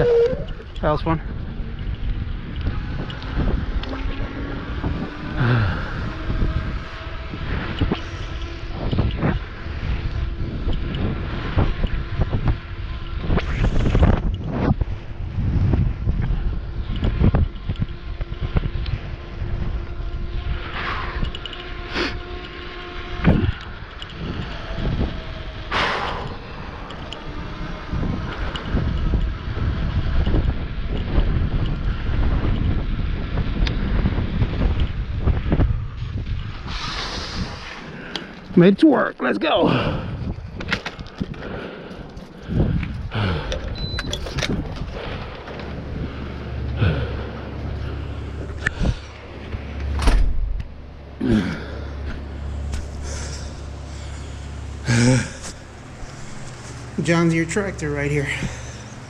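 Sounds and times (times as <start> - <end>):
faint steady whine: 0.0 - 59.0
wind buffeting microphone: 0.0 - 59.0
brief hissing rush: 36.6 - 37.9
faint steady hum: 41.3 - 59.0.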